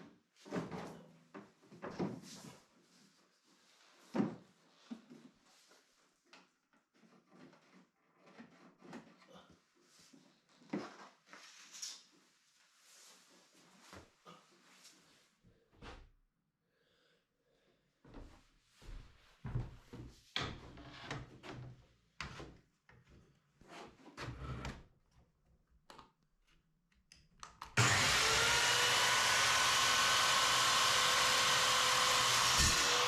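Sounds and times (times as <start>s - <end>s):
electric power tool whining: 27.8s - 33.0s.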